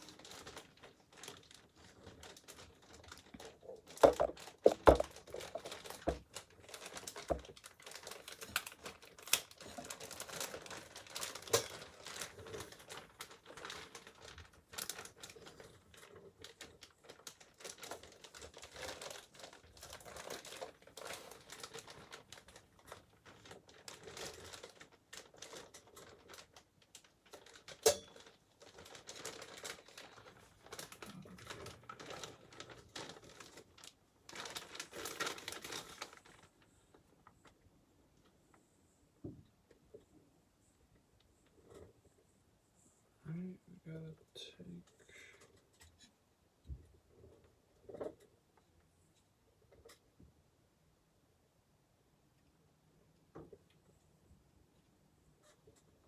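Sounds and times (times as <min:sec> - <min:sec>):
packaging crinkling: 0:00.0 - 0:37.6.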